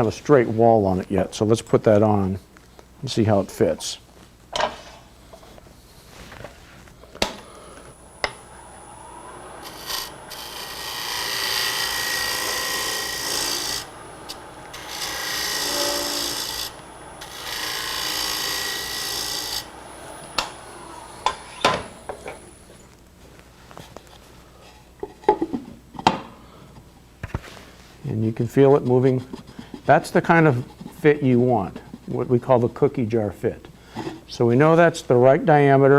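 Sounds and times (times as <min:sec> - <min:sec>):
wood lathe whine: 0:07.8 - 0:22.9.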